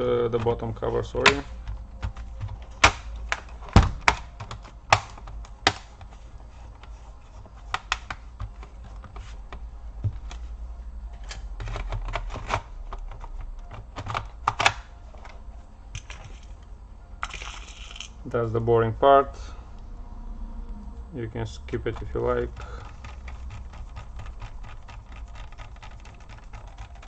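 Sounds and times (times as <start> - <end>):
steady low hum: 0.0 - 27.0.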